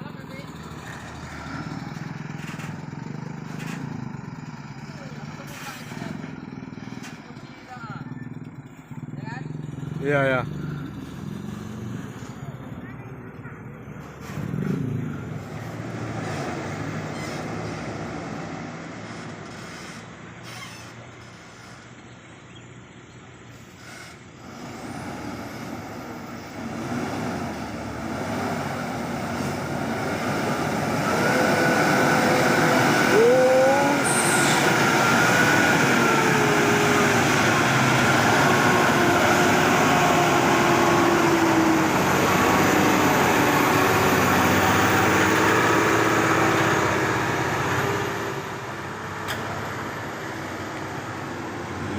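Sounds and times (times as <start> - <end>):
diesel truck engine labouring: 0.0 - 51.9.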